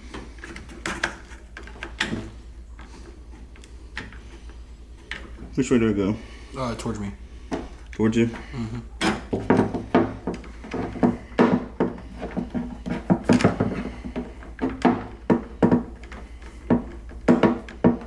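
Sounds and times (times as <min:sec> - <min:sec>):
steady low hum: 0:00.0 - 0:18.0
knocks and clicks of door hardware: 0:00.1 - 0:02.4, 0:08.4 - 0:18.0.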